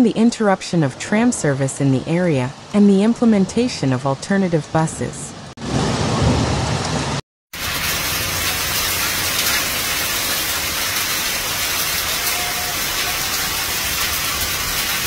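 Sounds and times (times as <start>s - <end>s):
heavy rain pouring: 5.6s - 15.0s.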